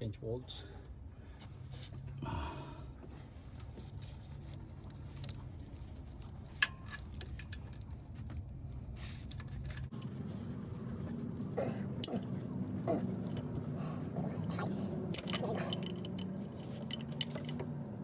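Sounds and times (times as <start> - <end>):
low hum: 9.7 - 18.0
hand tools clinking on metal: 11.6 - 17.7.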